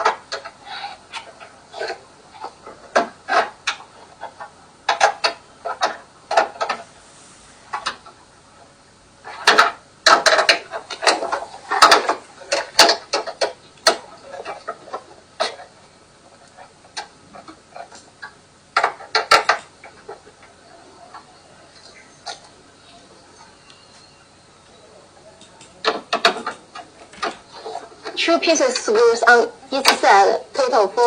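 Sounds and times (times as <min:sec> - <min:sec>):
clicks and knocks of hand work: 0:00.0 - 0:06.9, 0:09.3 - 0:15.7, 0:16.3 - 0:22.5, 0:25.4 - 0:28.9.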